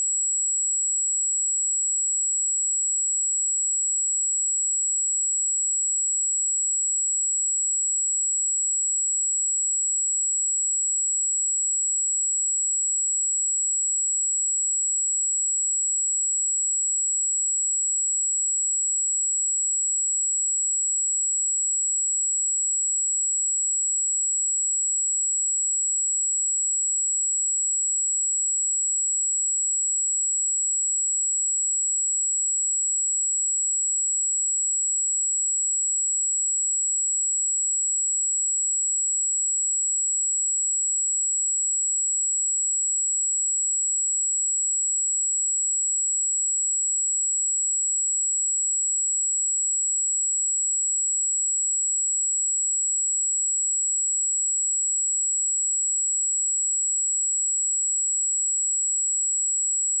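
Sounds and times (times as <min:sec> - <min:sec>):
high-pitched sine-wave test tone: 0:00.0 - 1:00.0.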